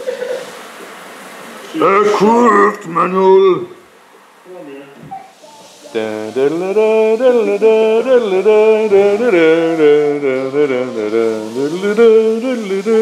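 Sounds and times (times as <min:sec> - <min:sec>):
person chanting in long notes: 0:05.9 - 0:13.0.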